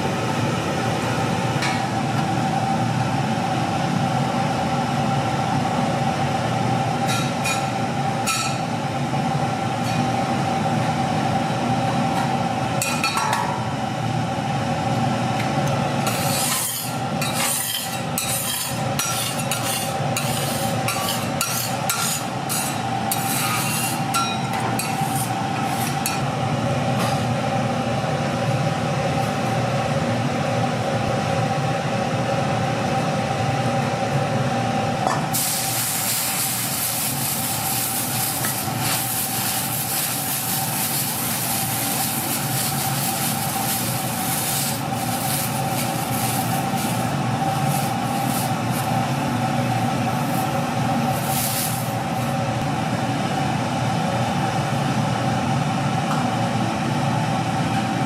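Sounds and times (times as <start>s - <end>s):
cooking station hum: 0.0s - 58.0s
frying hiss: 35.3s - 52.4s.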